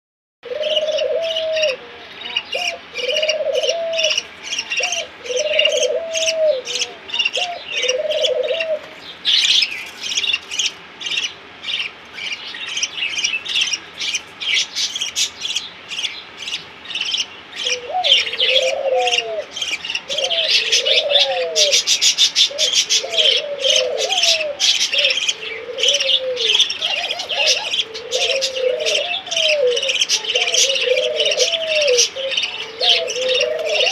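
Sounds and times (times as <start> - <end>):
cooing call: 0.4 - 9.7, 17.2 - 33.9
baby birds chirping: 0.4 - 33.9.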